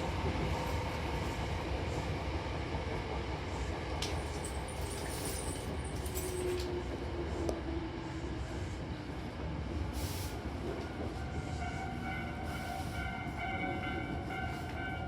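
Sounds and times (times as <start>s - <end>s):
train wheels rumbling on rail: 0.0s - 15.0s.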